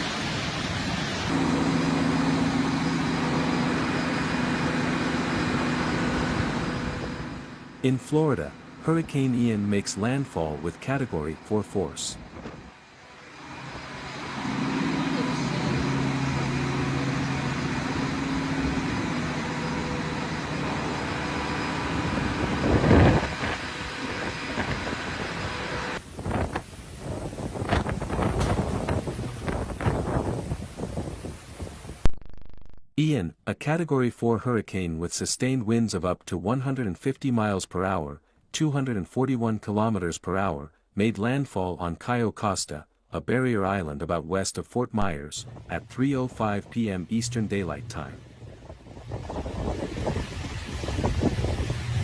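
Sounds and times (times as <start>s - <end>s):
rain: 0.0s - 1.7s
low engine-like drone: 1.0s - 26.0s, 45.0s - 52.0s
storm wind: 21.8s - 32.1s, 47.9s - 52.0s.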